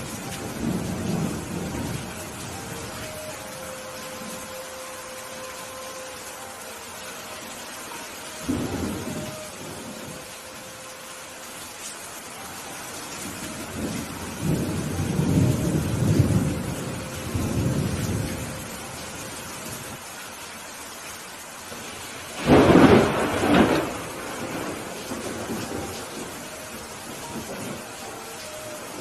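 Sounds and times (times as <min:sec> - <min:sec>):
steady rain: 0:00.0 - 0:29.0
rolling thunder: 0:22.4 - 0:27.9.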